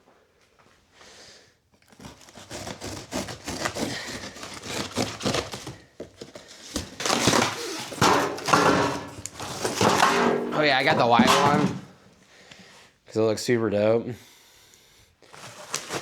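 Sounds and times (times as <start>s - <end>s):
cardboard box being cut and torn: 1.9s - 10.0s, 15.3s - 16.0s
packaging crinkling: 1.9s - 11.9s, 15.3s - 16.0s
handling knocks: 6.8s - 12.0s.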